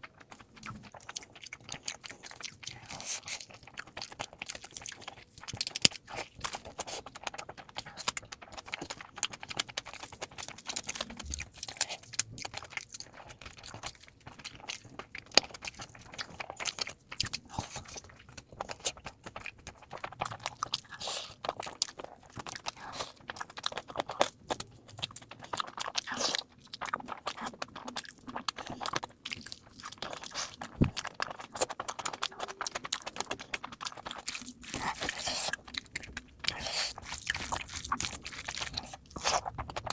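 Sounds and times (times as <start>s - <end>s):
chewing and crunching food: 0.0s - 39.9s.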